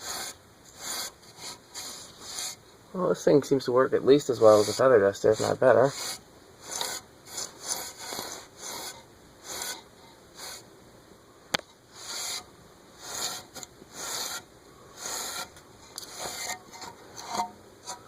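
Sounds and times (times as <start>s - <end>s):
duster swishing on fan blades: 0.0s - 2.6s, 3.2s - 9.8s.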